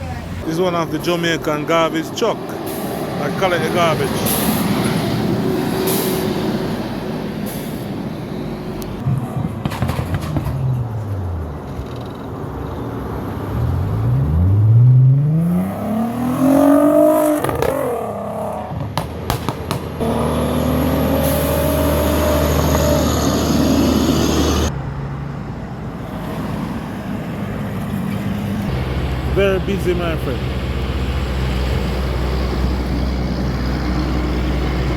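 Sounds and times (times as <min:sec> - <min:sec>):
vehicles driving past: 0:00.0 - 0:34.9
engine accelerating: 0:10.3 - 0:19.1, 0:19.7 - 0:25.2, 0:28.5 - 0:34.9
steady engine drone: 0:19.9 - 0:26.4, 0:27.1 - 0:34.9.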